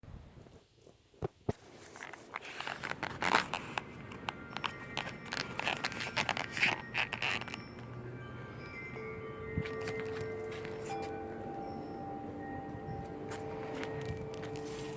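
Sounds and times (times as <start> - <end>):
clicks and scraping: 1.2 - 7.9.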